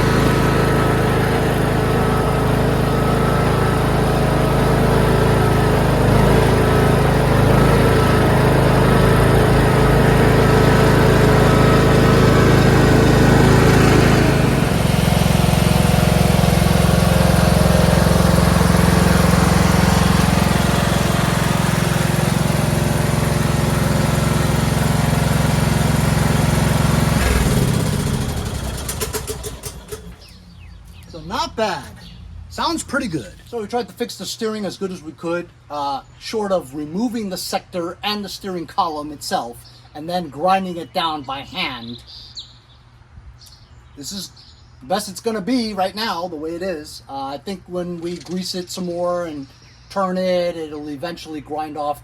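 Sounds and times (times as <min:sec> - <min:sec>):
engine winding down: 0:00.0 - 0:30.6
lawn tractor engine running: 0:00.0 - 0:34.0.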